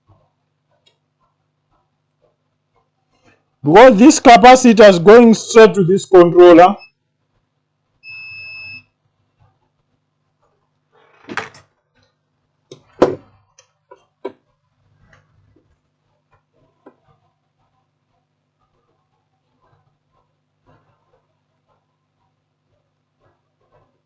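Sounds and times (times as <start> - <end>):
tools knocking on workbench: 12.7 - 13.3.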